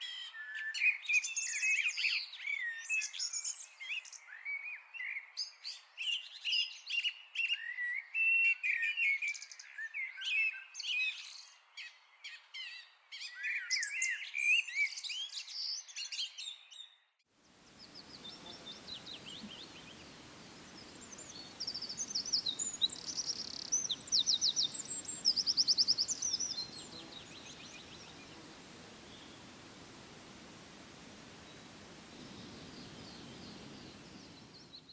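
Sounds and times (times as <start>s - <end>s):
steady outdoor hiss: 17.4s - 34.9s
songbirds chirping: 17.5s - 34.9s.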